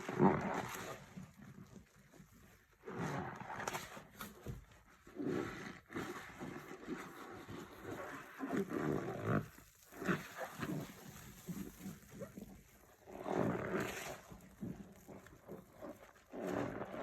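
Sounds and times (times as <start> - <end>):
foam bubbles crackling: 0.0 - 17.0
foam squeaking while scrubbed: 5.1 - 17.0.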